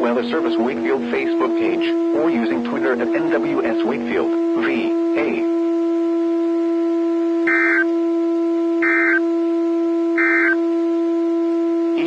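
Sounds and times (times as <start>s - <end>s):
steady hum: 0.0s - 12.0s
buzzy digital data bursts: 0.6s - 11.0s.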